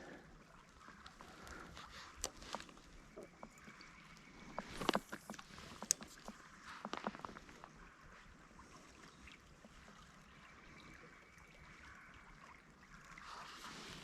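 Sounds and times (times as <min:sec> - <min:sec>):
water sloshing from wading: 0:00.0 - 0:14.0
small clicks and knocks: 0:04.5 - 0:07.7.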